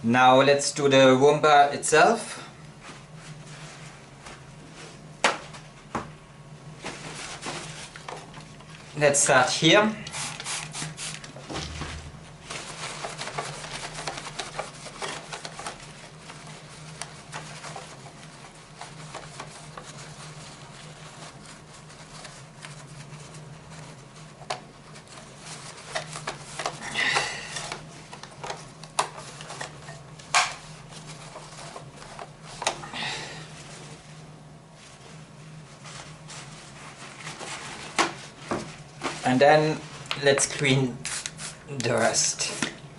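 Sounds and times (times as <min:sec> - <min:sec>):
steady low hum: 0:00.0 - 0:42.9
paper towel rubbing on plastic: 0:06.8 - 0:08.0, 0:08.9 - 0:11.3, 0:12.4 - 0:29.8, 0:30.6 - 0:32.6, 0:33.5 - 0:42.6.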